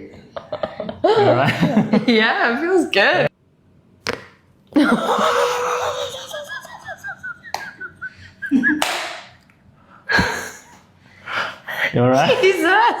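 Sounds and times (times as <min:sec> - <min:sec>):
person giggling: 0:04.8 - 0:08.9, 0:12.1 - 0:13.0.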